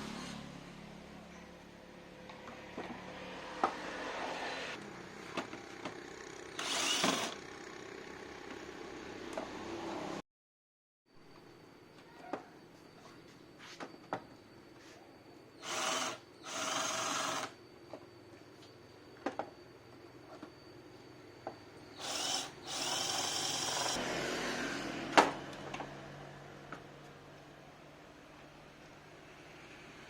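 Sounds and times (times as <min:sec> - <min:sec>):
power drill whining: 0:06.2 - 0:07.6, 0:15.6 - 0:17.6, 0:21.9 - 0:24.0.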